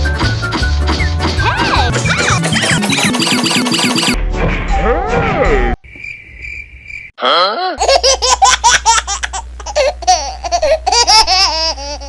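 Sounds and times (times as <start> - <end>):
high beep: 1.9 - 4.2.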